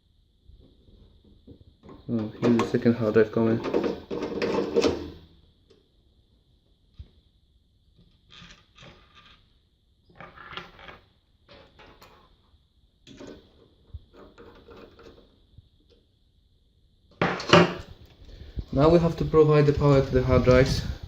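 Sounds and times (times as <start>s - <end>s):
metal scraping and rattling: 1.9s - 5.2s.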